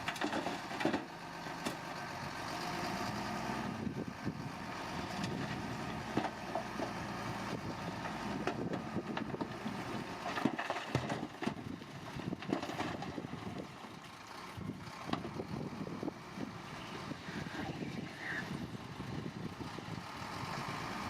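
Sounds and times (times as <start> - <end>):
machinery clanks and knocks: 0.0 - 1.8, 8.3 - 11.7
diesel engine hum: 0.0 - 21.0.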